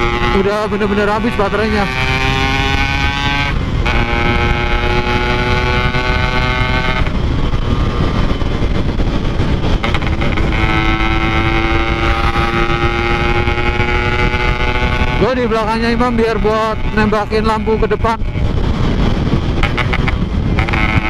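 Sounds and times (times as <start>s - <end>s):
road and wind rumble: 0.0s - 21.0s
two-stroke motorcycle engine: 0.0s - 21.0s.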